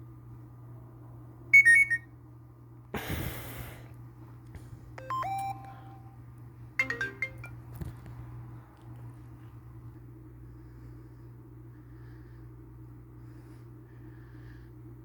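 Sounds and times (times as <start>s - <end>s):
held tone: 1.6s - 2.0s, 5.0s - 6.2s, 6.8s - 7.6s
phone alert tones: 1.6s - 2.0s, 5.0s - 6.2s, 6.8s - 7.7s
bright chime: 6.8s - 7.6s.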